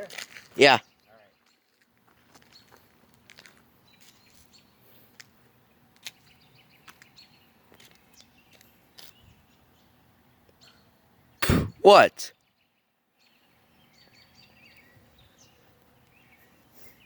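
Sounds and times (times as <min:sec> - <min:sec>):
faint bird chirps: 0:06.2 - 0:11.4.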